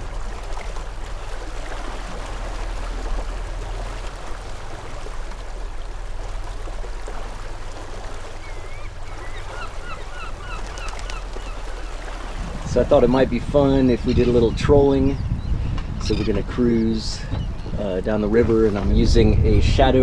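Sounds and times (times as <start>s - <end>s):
low steady hum: 0.0s - 20.0s
water and wind rushing: 0.0s - 20.0s
bird chirping: 8.4s - 19.6s.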